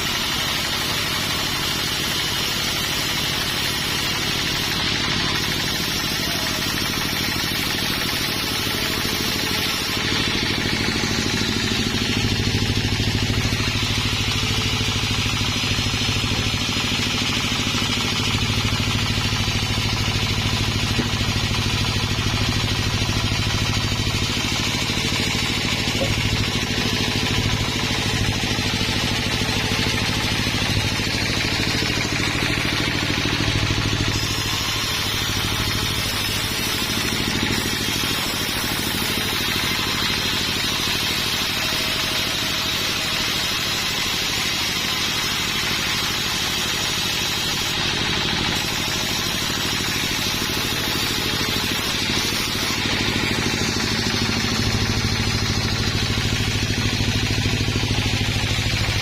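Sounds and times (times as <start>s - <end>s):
sawmill engine running: 0.0s - 59.0s.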